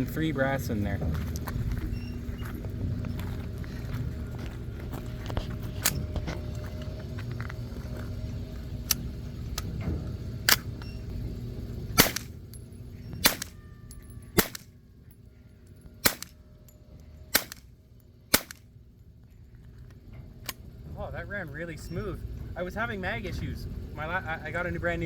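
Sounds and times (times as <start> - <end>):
semi-automatic firearm shots: 12.0 - 12.4, 13.2 - 13.6, 14.4 - 14.8, 16.0 - 16.4, 17.3 - 17.7, 18.3 - 18.7.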